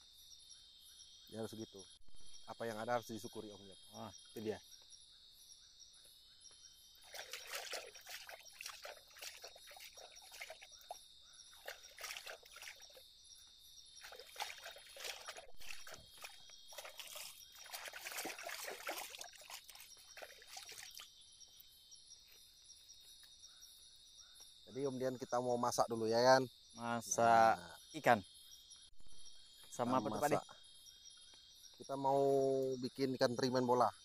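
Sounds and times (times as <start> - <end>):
crickets chirping: 0.0 - 34.0
water splashing and trickling: 6.8 - 21.6.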